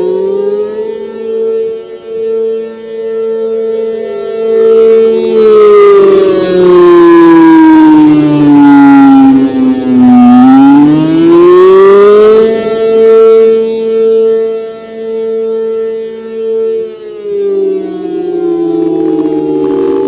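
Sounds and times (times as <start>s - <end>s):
rotating siren wailing: 0.0s - 20.0s.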